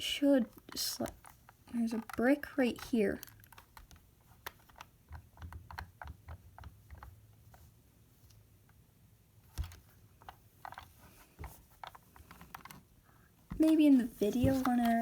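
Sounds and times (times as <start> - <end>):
plastic bricks clicking: 0.6 - 7.1, 9.5 - 12.8.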